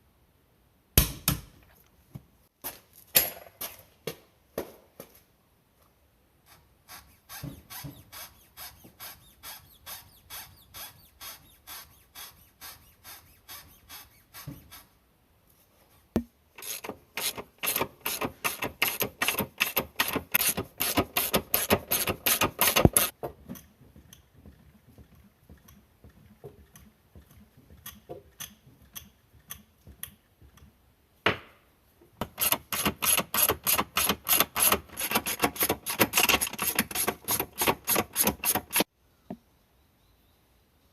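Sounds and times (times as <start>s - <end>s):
hand tool rasping strokes: 6.5s - 15.0s, 16.6s - 23.2s, 32.2s - 38.9s.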